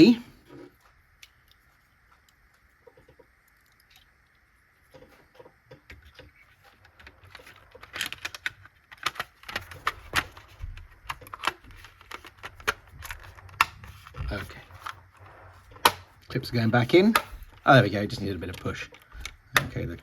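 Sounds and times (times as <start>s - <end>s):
plastic clicks and clatter: 4.9s - 20.0s.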